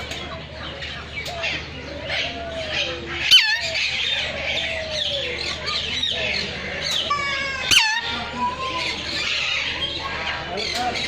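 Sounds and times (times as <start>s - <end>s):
birds chirping in chorus: 0.0s - 11.0s
harsh bird squawks: 3.1s - 4.7s, 6.7s - 10.2s.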